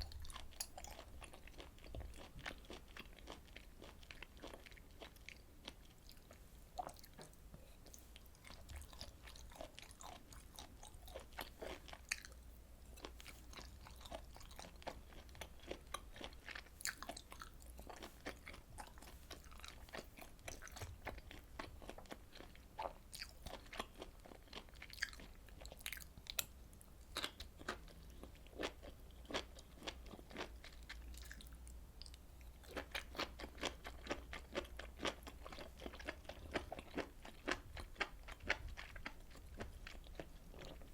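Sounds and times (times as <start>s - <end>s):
wet chewing clicks and smacks: 13.0s - 26.5s.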